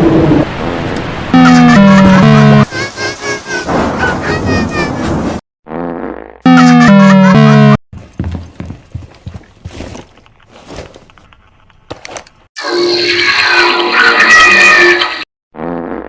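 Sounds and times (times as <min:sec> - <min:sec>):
harsh burst with steady tones: 0:01.2 - 0:05.0
distorted cartoon sound effects: 0:01.3 - 0:05.0, 0:05.7 - 0:07.8, 0:12.6 - 0:16.0.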